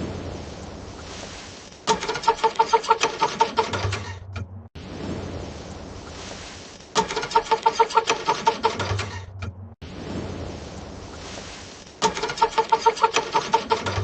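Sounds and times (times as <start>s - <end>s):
car engine cranking without starting: 1.9s - 4.7s, 7.0s - 9.8s, 12.0s - 14.0s.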